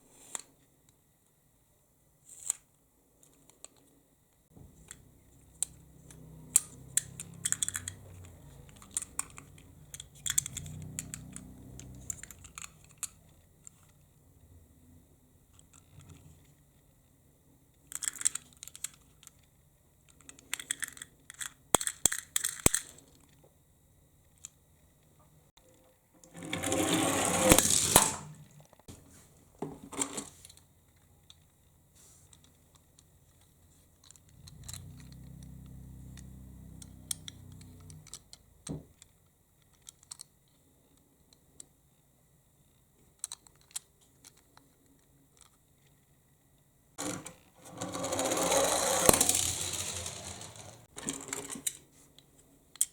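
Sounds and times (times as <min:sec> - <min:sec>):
toy car rattling roll: 0:06.5 - 0:13.9, 0:17.9 - 0:19.4, 0:20.3 - 0:23.0, 0:26.2 - 0:28.6, 0:47.0 - 0:51.8.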